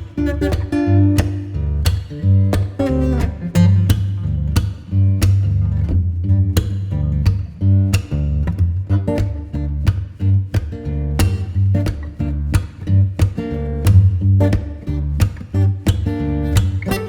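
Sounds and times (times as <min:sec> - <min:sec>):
guitar music with bass and beat: 0:00.0 - 0:17.0.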